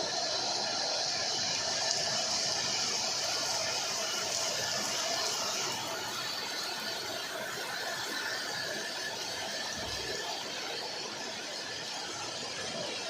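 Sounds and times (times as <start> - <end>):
heavy rain: 0.0 - 13.0.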